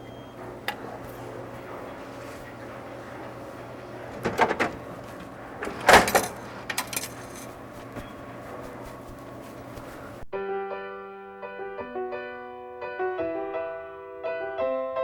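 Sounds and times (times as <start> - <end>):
knocks and rattles: 4.1 - 7.6.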